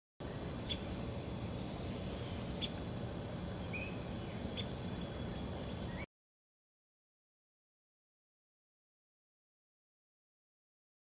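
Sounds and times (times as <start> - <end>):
sharp bird chirps: 0.2 - 1.0, 1.6 - 2.9, 3.6 - 6.1
high-pitched insect drone: 0.2 - 6.1.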